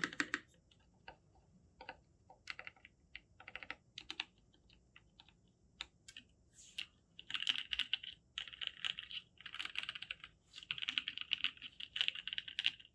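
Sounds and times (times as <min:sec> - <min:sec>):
mechanical keyboard typing: 0:00.0 - 0:00.5, 0:01.8 - 0:05.4, 0:07.2 - 0:12.9.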